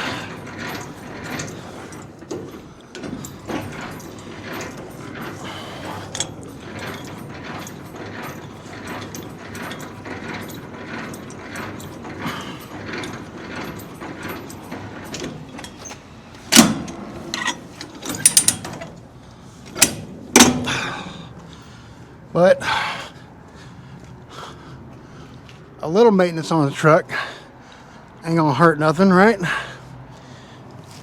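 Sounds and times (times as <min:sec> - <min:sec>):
loud metal clanks: 0:00.0 - 0:21.2.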